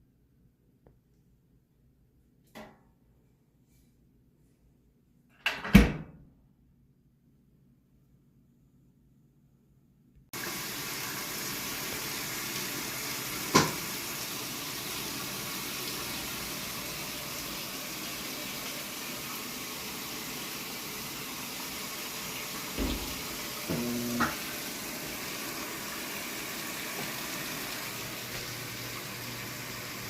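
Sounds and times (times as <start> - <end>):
water running: 10.4 - 30.0.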